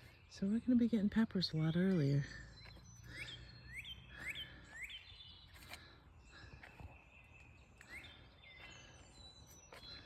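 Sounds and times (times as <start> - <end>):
songbird rising chirp: 0.0 - 10.0
faint bird calls: 2.2 - 10.0.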